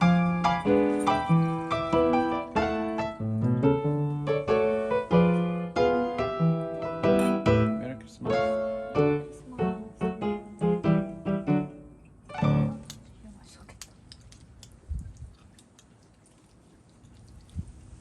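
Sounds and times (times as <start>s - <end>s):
gentle piano melody: 0.0s - 13.0s.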